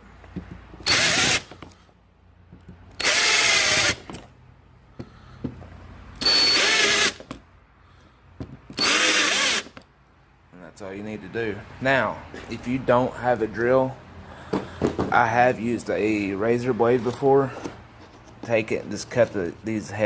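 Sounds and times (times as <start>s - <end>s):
power drill drilling plastic rivets: 0.8s - 1.7s, 2.9s - 4.2s, 6.2s - 7.4s, 8.7s - 9.8s.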